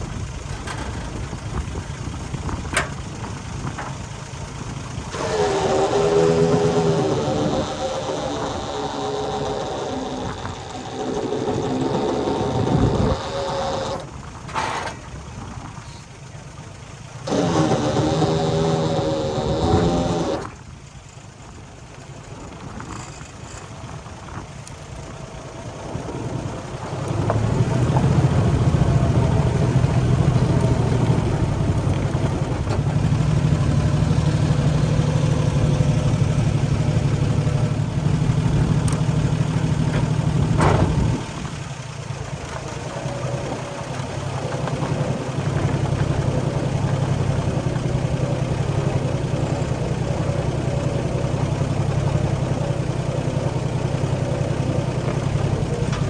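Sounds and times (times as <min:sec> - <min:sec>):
old engine running: 0:00.0 - 0:56.0.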